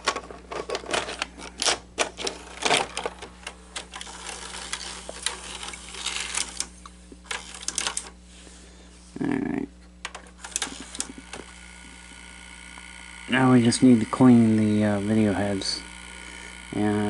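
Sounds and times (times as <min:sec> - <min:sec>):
small parts clicking and clattering: 0:00.0 - 0:08.2
faint steady hum: 0:00.0 - 0:17.0.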